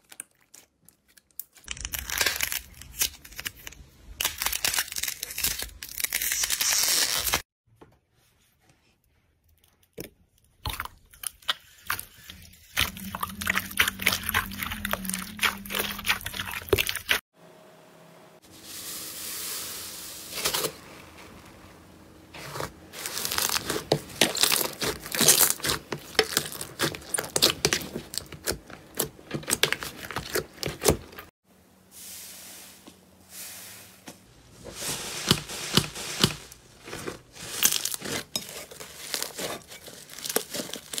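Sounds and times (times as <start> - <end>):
slime crackling and popping: 23.0 - 30.7.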